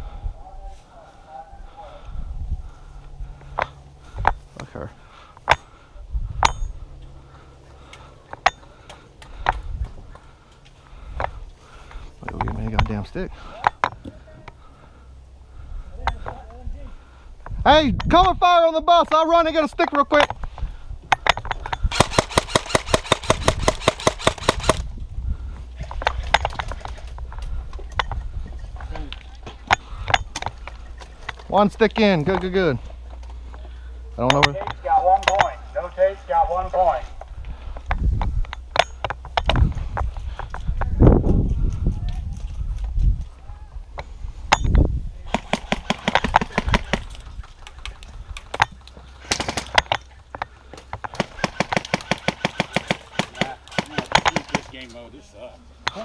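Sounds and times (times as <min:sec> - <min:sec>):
airsoft gun firing rapidly: 0:21.9 - 0:24.8, 0:45.3 - 0:47.1, 0:51.2 - 0:54.6.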